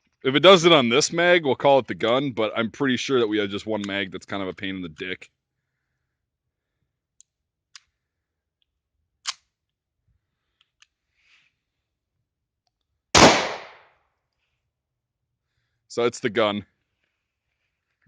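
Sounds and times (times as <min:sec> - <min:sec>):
pistol handling clicks: 0:09.2 - 0:09.8, 0:13.2 - 0:13.8
pistol shot: 0:13.2 - 0:13.9.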